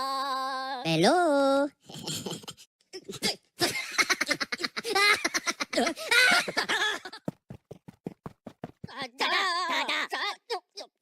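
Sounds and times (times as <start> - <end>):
person giggling and laughing: 1.8 - 7.3.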